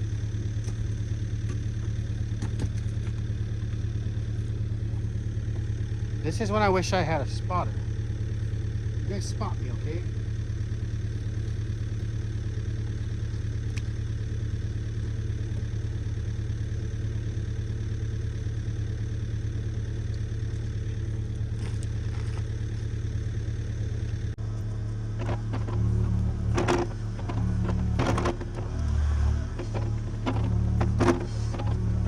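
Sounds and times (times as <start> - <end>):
engine idling: 0.0 - 32.0
lower engine note with knocks: 0.0 - 32.0
faint clanks: 25.2 - 32.0.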